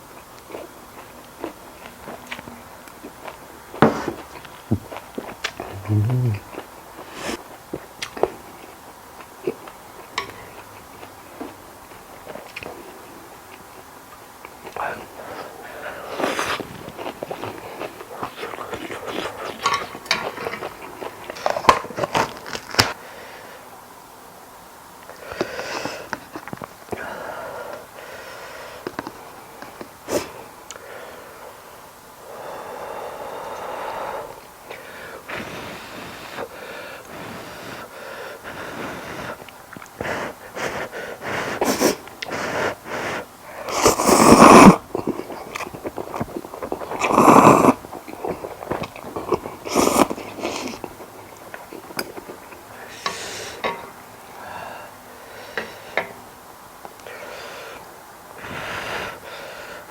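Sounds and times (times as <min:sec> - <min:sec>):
person chewing: 0:03.0 - 0:08.6, 0:14.4 - 0:23.0, 0:38.6 - 0:53.3
mouth clicks: 0:04.7 - 0:06.6
person sniffing: 0:05.6 - 0:06.5, 0:07.1 - 0:07.4, 0:32.3 - 0:39.4, 0:40.0 - 0:44.8, 0:52.8 - 0:53.6
loud breathy bursts: 0:57.0 - 0:59.9.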